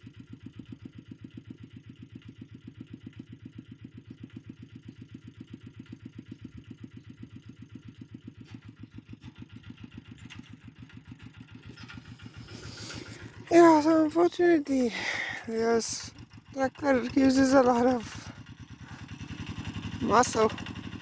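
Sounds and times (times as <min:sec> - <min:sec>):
small engine exhaust pulsing: 0:00.0 - 0:21.0.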